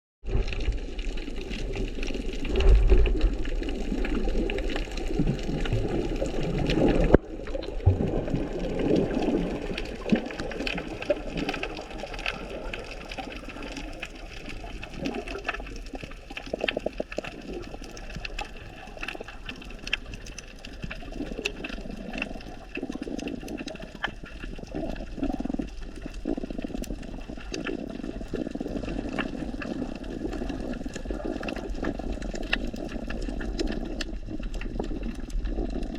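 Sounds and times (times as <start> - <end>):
muffled underwater sloshing: 0.2 - 35.9
crackle of sharp clicks: 30.4 - 35.5.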